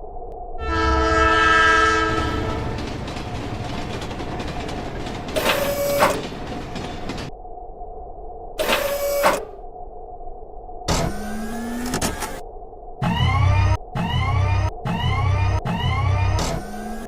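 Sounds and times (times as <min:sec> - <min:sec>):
train rumbling on rails: 0:00.5 - 0:07.5
train horn: 0:00.6 - 0:02.9.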